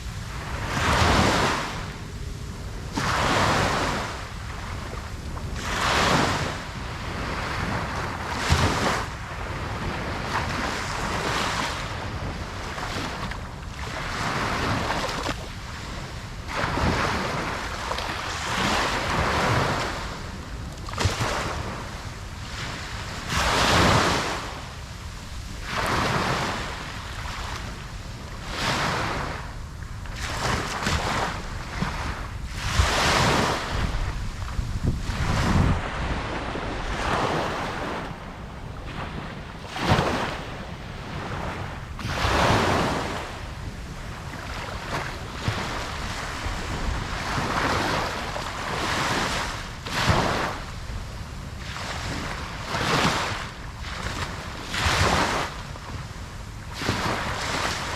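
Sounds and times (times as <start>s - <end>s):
steady low rumble: 0.0s - 5.7s
ocean waves breaking on beach: 0.0s - 57.9s
wind on microphone: 0.0s - 57.9s.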